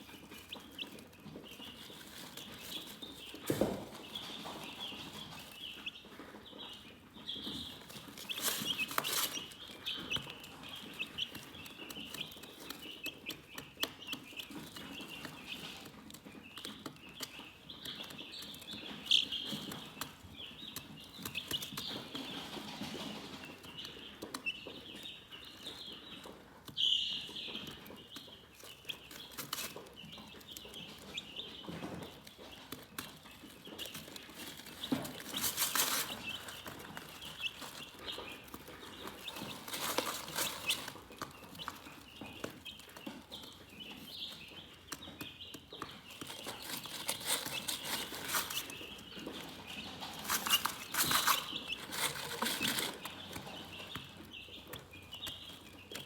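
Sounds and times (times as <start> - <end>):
rustling: 0.0 - 6.0, 6.6 - 16.1, 28.6 - 56.0
chickens chirping: 0.0 - 56.0.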